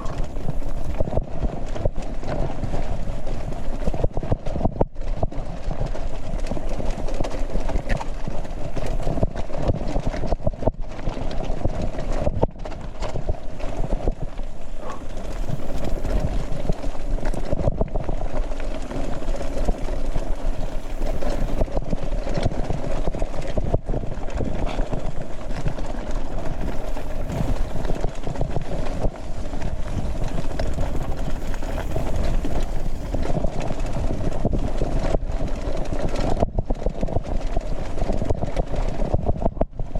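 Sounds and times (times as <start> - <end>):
steady rushing noise: 0.0 - 10.6, 11.4 - 36.0
bike frame rattling and knocking: 11.1 - 34.6.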